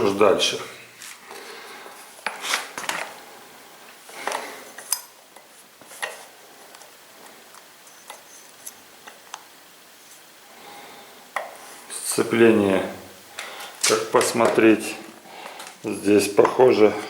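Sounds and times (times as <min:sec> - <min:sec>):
metal tools clinking: 0:04.3 - 0:05.2.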